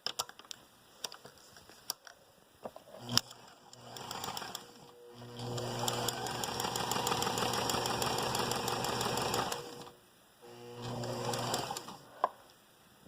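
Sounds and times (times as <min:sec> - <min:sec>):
sewing machine running: 0:03.1 - 0:09.9, 0:10.5 - 0:12.0.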